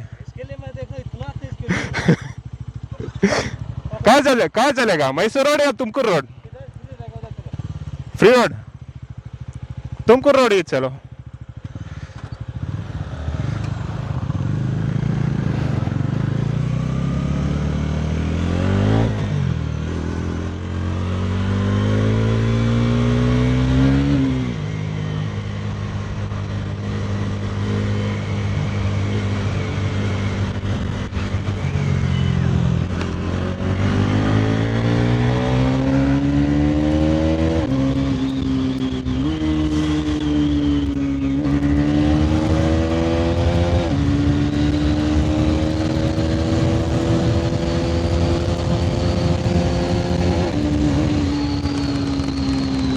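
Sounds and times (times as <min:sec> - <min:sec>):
motorcycle engine accelerating: 0:00.0 - 0:52.9.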